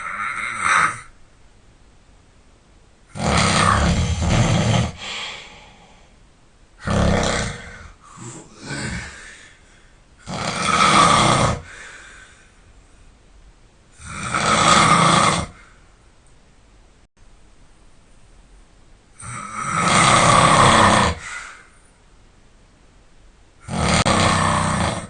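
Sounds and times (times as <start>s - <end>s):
heavy rattling snores: 0.0s - 1.1s, 3.1s - 5.1s, 6.8s - 8.0s, 10.2s - 11.7s, 14.0s - 15.6s, 19.2s - 21.3s, 23.6s - 25.0s
soft breathing: 4.9s - 6.3s, 7.6s - 10.2s, 11.6s - 13.3s, 21.2s - 22.1s.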